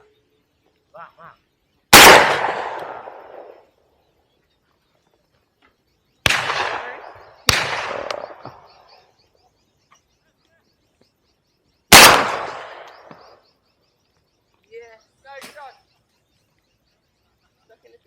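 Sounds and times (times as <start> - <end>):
faint high bird chirps: 0.0 - 1.9, 3.1 - 11.9, 12.7 - 18.0
shotgun shots echoing: 1.9 - 3.6, 6.2 - 8.9, 11.9 - 13.4.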